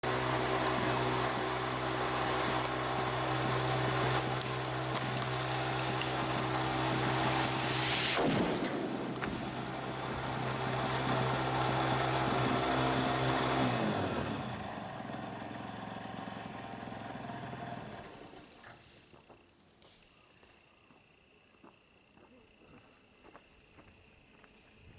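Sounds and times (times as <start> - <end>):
engine running: 0.0 - 18.6.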